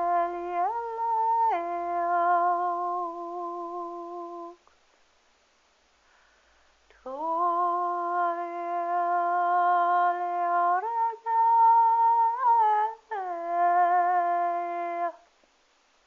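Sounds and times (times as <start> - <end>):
person humming held notes: 0.0 - 4.6, 6.9 - 15.2.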